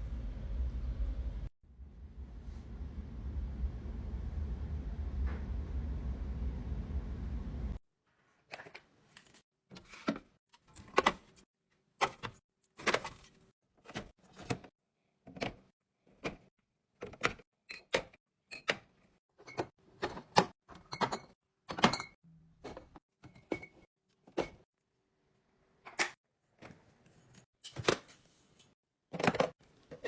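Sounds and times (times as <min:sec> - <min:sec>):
kitchen items clicking and clinking: 0:08.4 - 0:24.6, 0:25.8 - 0:30.0.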